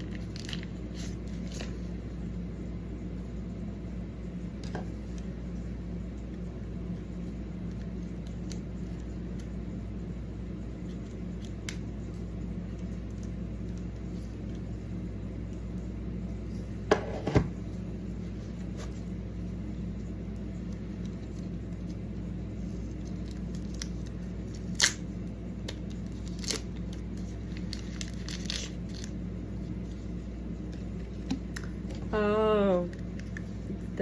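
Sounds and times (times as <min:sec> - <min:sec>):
steady low hum: 0:00.0 - 0:34.0
packaging crinkling: 0:22.8 - 0:29.2.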